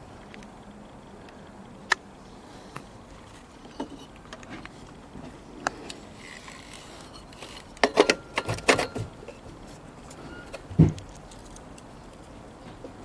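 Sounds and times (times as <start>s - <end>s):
light metal clicks and knocks: 7.1s - 9.5s.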